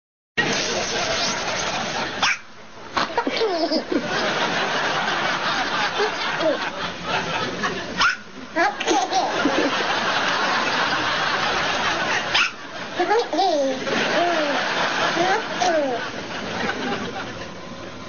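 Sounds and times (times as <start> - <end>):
laughter: 0.4 - 2.2, 3.0 - 8.0, 8.6 - 17.7
steady hiss: 0.4 - 2.2.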